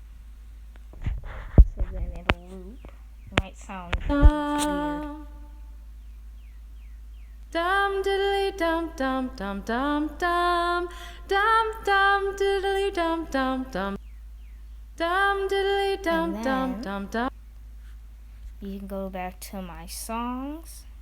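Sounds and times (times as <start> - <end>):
woman singing unaccompanied: 3.9 - 5.6, 7.5 - 14.0, 15.0 - 17.3.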